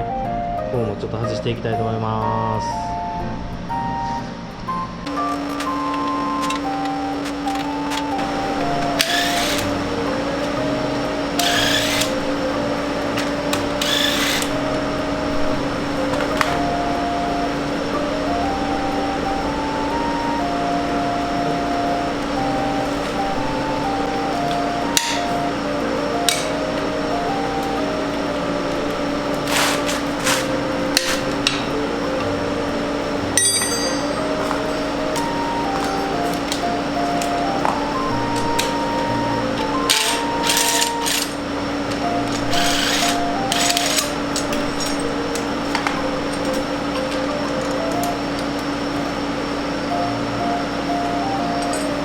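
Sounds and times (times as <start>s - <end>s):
background music: 0.0s - 52.0s
power tool whirring: 5.1s - 33.4s, 34.0s - 50.6s
hand tools knocking on metal: 33.4s - 36.6s.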